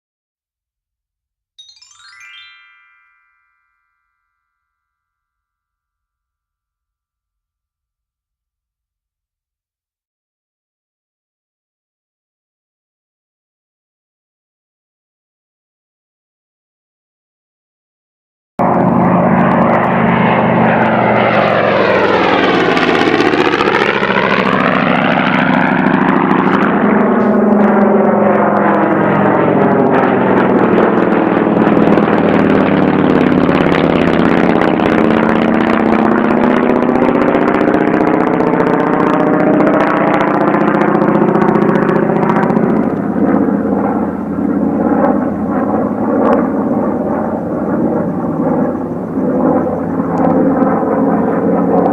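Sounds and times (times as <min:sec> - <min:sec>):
propeller aeroplane engine droning: 0:18.6 - 0:51.9.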